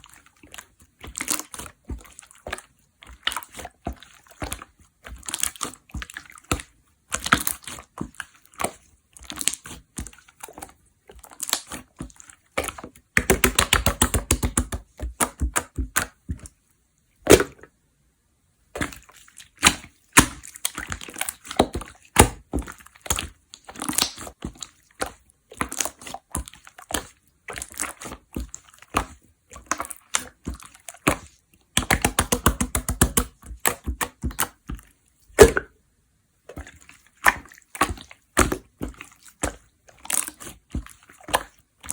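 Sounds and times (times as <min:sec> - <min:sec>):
slime squeezed by hand: 0:35.3 - 0:35.7.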